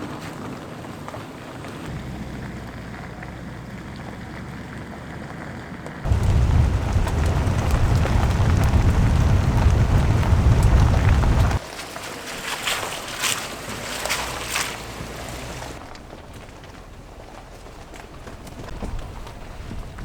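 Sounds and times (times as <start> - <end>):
loud rumble with crackling: 6.1 - 11.6
vehicle driving rumble: 6.1 - 11.6.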